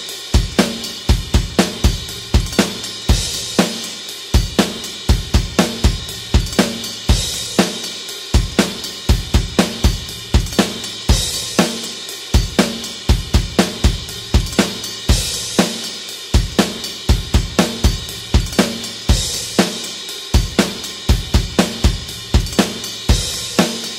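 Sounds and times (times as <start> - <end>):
rock drum beat: 0.0 - 23.9.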